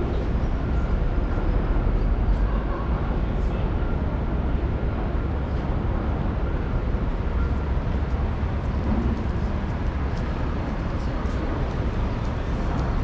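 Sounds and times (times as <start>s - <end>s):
low rumble of traffic: 0.0s - 13.0s
faint ticks and clatter: 7.9s - 13.0s.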